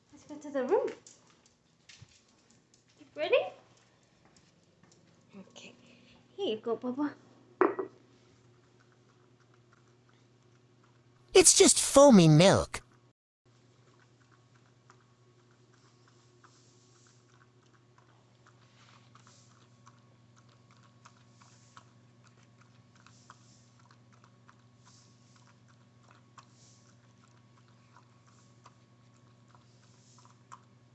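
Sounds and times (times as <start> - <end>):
dog lapping milk: 8.4 - 11.3, 13.7 - 30.9.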